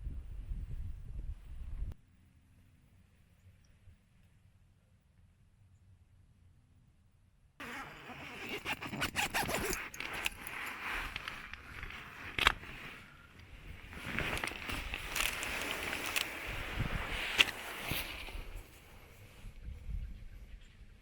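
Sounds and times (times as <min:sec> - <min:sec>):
zipper pulled: 0:07.6 - 0:13.1, 0:13.8 - 0:18.6.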